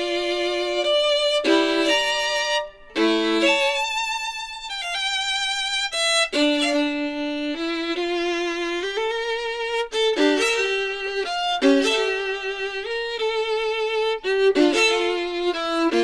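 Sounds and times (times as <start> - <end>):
violin music with vibrato: 0.0 - 16.0.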